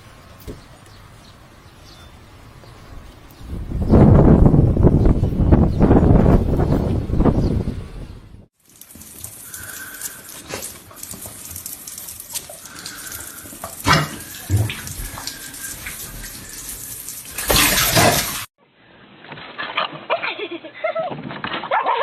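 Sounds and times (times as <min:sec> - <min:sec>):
running water: 0:08.6 - 0:18.5.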